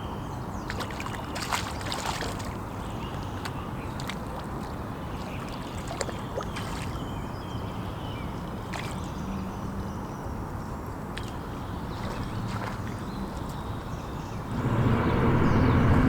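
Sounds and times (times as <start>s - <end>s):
low rumbling wind: 11.4s - 16.0s.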